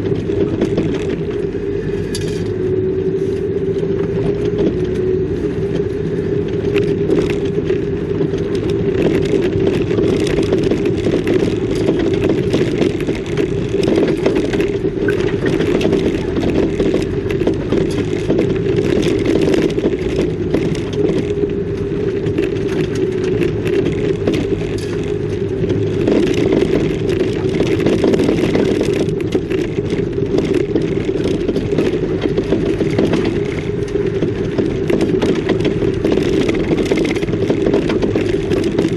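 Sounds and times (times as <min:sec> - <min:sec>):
car engine and road noise: 0:00.0 - 0:38.9
small rattles and scrapes: 0:00.0 - 0:38.9.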